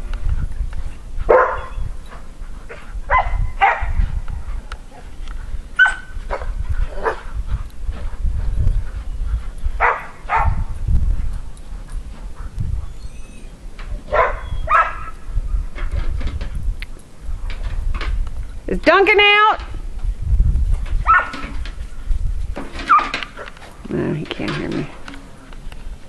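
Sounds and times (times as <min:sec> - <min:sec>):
wind rumble on microphone: 0:00.0 - 0:26.0
dogs barking: 0:01.3 - 0:01.8, 0:02.7 - 0:04.7, 0:05.8 - 0:07.3, 0:09.8 - 0:10.7, 0:14.0 - 0:15.2, 0:21.0 - 0:21.5.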